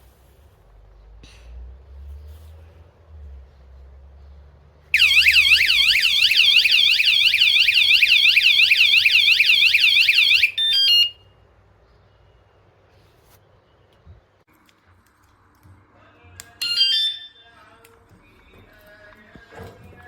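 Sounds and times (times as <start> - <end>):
bike alarm siren wailing: 5.0 - 11.2.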